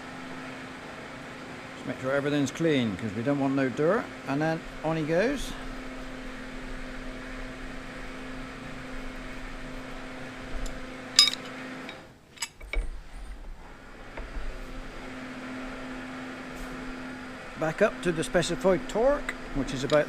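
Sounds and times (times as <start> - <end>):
steady low hum: 0.0 - 20.0
metal tools clinking: 10.6 - 12.9, 19.7 - 20.0.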